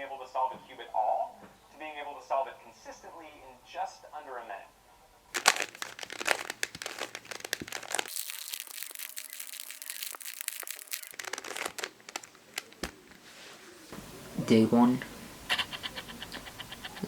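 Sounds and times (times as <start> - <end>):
crinkling and crackling handling: 5.3 - 13.8.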